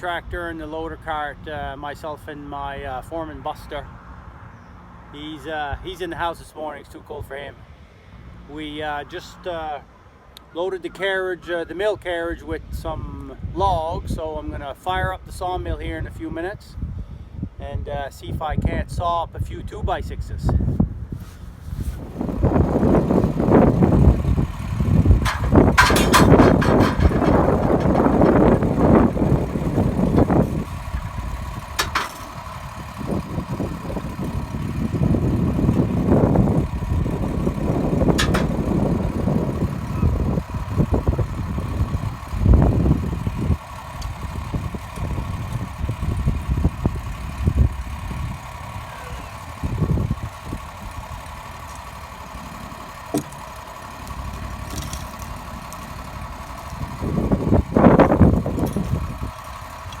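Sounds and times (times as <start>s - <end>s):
engine idling hum: 0.0s - 60.0s
uneven low rumbles: 20.4s - 60.0s.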